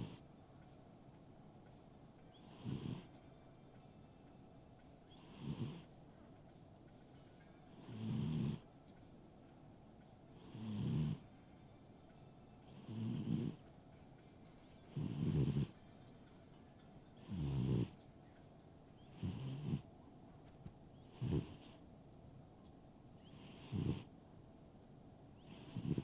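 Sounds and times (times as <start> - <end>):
pet snoring: 0.0 - 0.2, 2.3 - 3.2, 5.1 - 5.9, 7.7 - 8.7, 10.3 - 11.3, 12.6 - 13.7, 14.8 - 15.8, 17.2 - 18.1, 19.0 - 19.9, 21.0 - 21.8, 23.2 - 24.1, 25.4 - 26.0.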